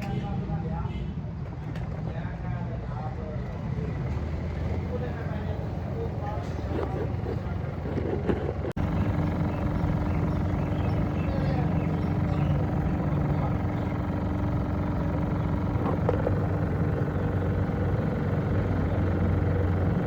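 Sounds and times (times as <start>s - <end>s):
mechanical running hum: 4.2s - 20.0s.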